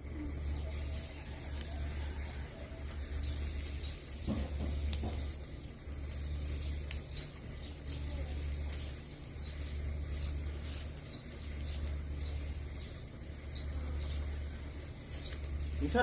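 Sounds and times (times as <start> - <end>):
small birds chirping: 0.0 - 16.0
knock: 4.3 - 5.2.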